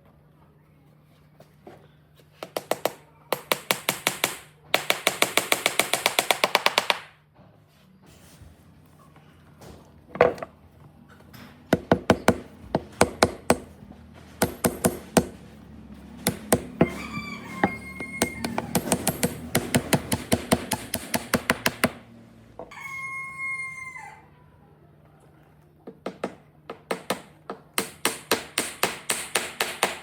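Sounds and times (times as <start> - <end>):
hammer striking wood: 11.7 - 13.8, 14.4 - 15.4, 16.2 - 22.0, 26.1 - 30.0.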